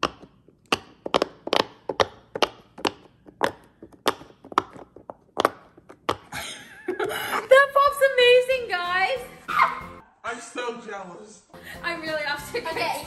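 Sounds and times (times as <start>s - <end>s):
fidget toy bubbles popping: 0.0s - 6.3s.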